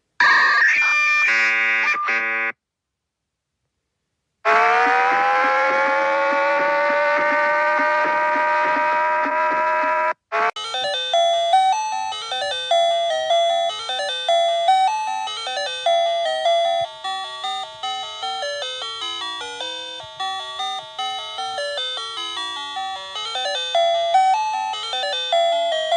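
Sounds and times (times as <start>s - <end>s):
electronic bell-like chime melody: 10.6s - 25.9s.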